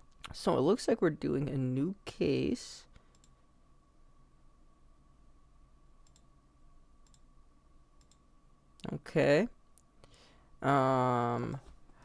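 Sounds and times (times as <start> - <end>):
faint steady whine: 0.0 - 12.0
computer mouse clicks: 3.1 - 3.4, 6.0 - 6.3, 7.0 - 7.3, 8.0 - 8.2.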